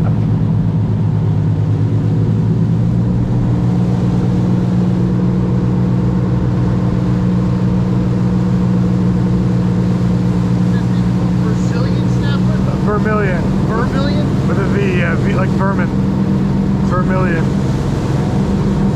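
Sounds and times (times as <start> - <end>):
boat engine running: 0.0 - 18.9.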